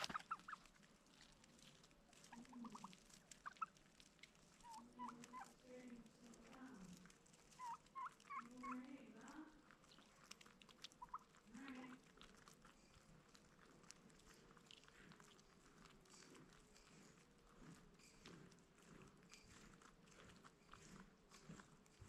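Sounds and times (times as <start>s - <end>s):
low clucking calls: 0.0s - 0.7s
poultry chirping: 0.0s - 0.8s, 2.1s - 5.6s, 7.4s - 8.9s, 9.8s - 13.2s.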